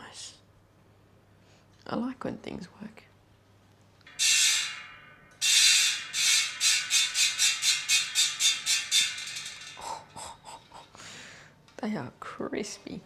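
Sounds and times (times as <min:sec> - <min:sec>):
bicycle hub ratcheting: 0:04.0 - 0:11.0.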